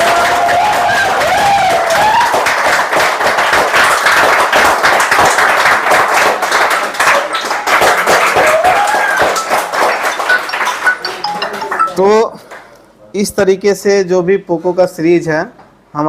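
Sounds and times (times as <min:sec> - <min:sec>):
phone speaker playing ringtone: 0:09.1 - 0:12.4.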